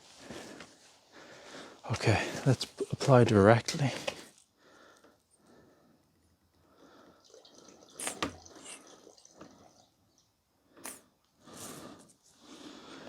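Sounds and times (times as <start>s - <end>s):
wet squirt from squeeze bottle: 8.0s - 8.8s.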